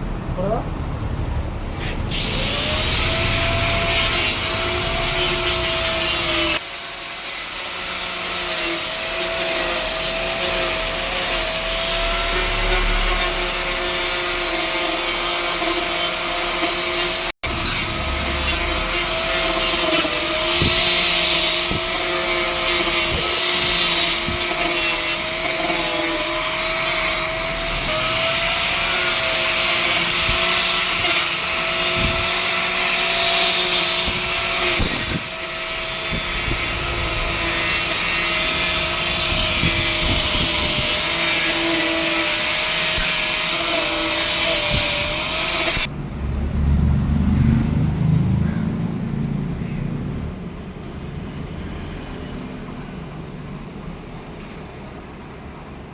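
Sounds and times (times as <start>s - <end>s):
angle grinder whine: 1.7s - 46.0s.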